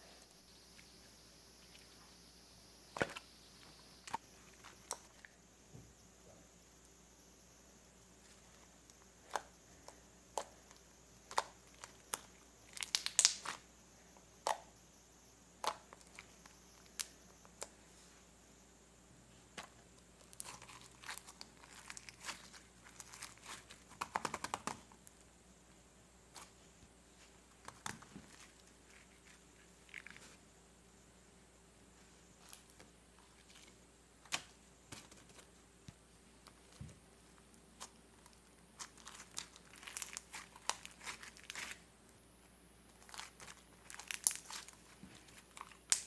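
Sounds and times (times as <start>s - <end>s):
crinkling: 8.2s - 13.7s, 15.6s - 17.8s, 19.3s - 25.3s, 26.3s - 30.5s, 32.0s - 46.0s.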